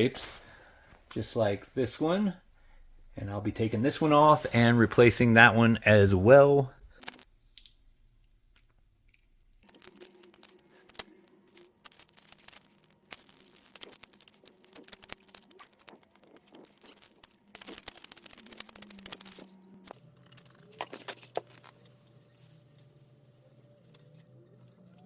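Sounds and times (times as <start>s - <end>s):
scratching and ticking: 7.0s - 25.0s
sticker tearing and crinkling: 7.0s - 25.0s.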